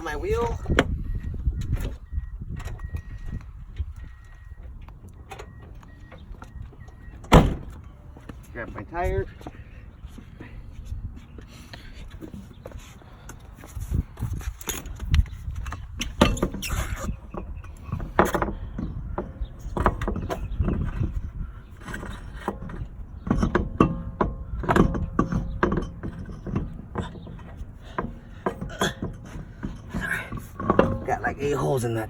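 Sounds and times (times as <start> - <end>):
metallic knocks and scrapes of wheel: 13.8 - 32.0.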